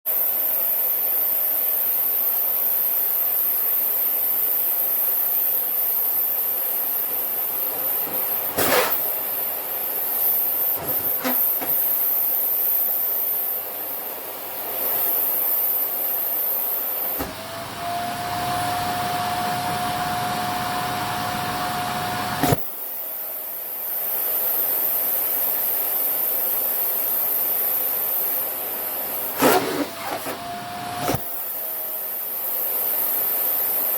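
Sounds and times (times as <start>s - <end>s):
vacuum cleaner whining: 6.1s - 13.4s, 14.7s - 23.1s, 28.5s - 33.9s
fabric knocking against nozzle: 10.8s - 11.9s.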